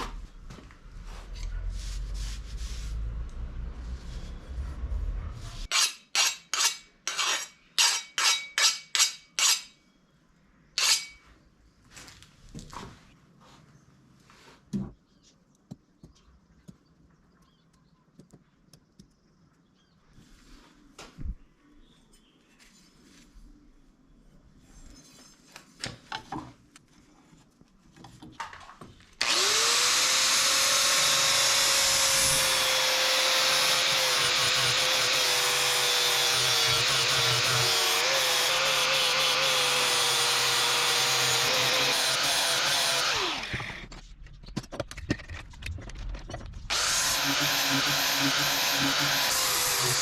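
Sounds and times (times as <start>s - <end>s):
electric power tool whining: 29.2s - 43.9s, 46.7s - 50.0s.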